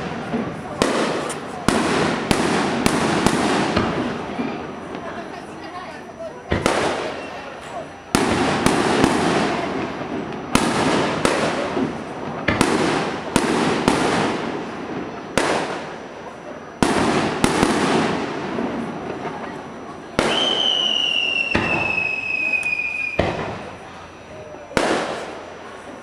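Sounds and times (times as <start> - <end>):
firework shells booming: 0.0 - 26.0
falling firework whistle: 6.5 - 9.7, 19.1 - 25.4.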